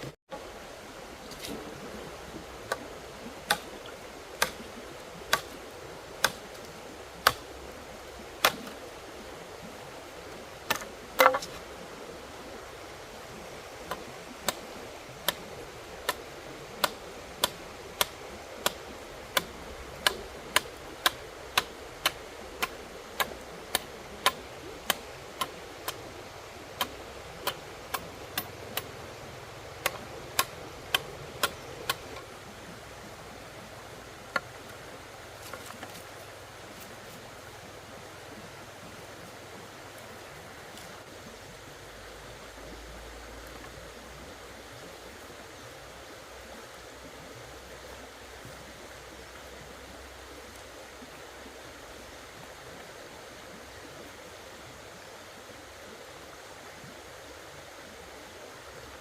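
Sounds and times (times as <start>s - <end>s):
steady hiss: 0.0s - 59.0s
sharp knocks: 10.7s - 11.6s.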